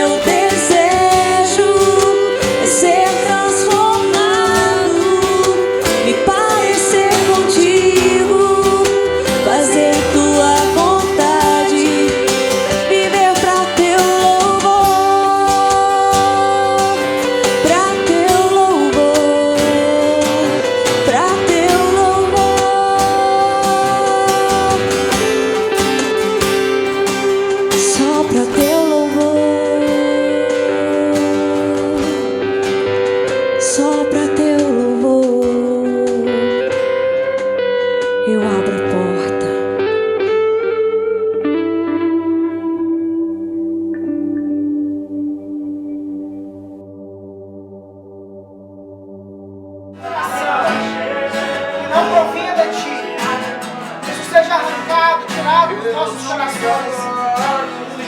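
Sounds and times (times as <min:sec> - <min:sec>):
woman singing: 0:00.0 - 0:26.2, 0:27.2 - 0:37.4, 0:38.0 - 0:40.7
percussion: 0:00.0 - 0:38.4, 0:50.0 - 0:58.0
acoustic guitars: 0:00.0 - 0:47.8, 0:49.0 - 0:58.0
electric guitar: 0:00.0 - 0:58.0.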